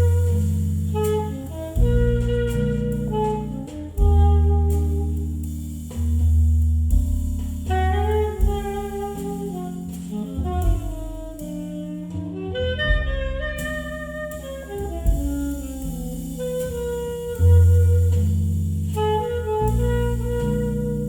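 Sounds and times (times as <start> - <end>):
alto saxophone melody: 0.0 - 21.0
low bass notes: 0.0 - 21.0.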